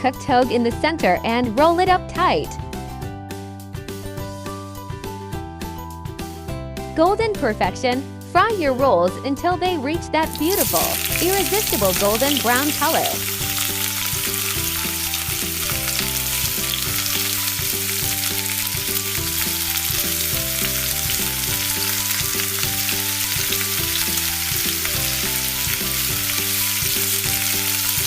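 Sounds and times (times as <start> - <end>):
spring rolls sizzling in oil: 10.3 - 28.0.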